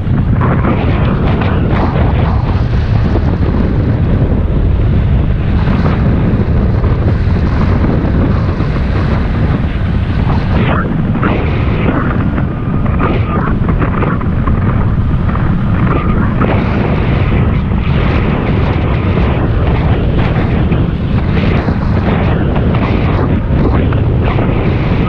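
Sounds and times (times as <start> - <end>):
wind buffeting microphone: 0.0 - 25.0.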